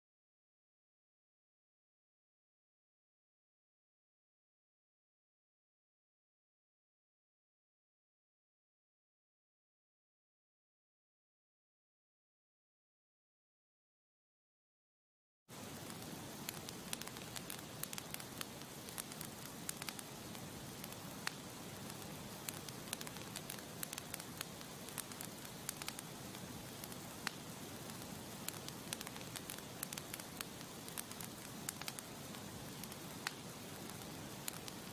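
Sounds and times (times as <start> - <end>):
campfire crackling and popping: 15.5 - 34.9
fire hissing: 15.5 - 34.9.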